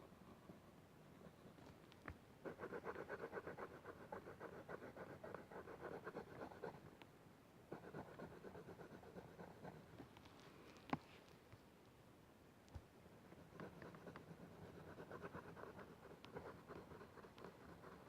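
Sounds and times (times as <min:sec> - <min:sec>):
pencil scratching on paper: 0:07.7 - 0:09.9, 0:13.4 - 0:18.0.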